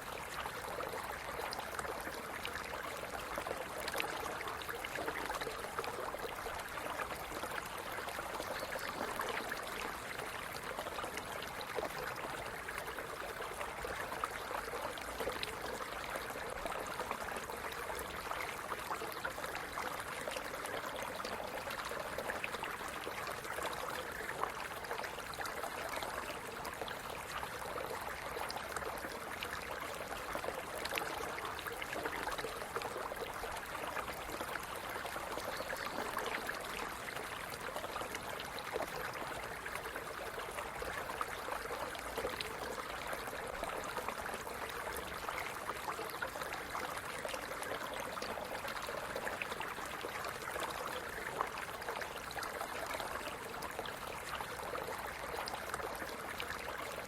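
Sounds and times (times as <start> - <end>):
stream running over rocks: 0.0 - 57.0.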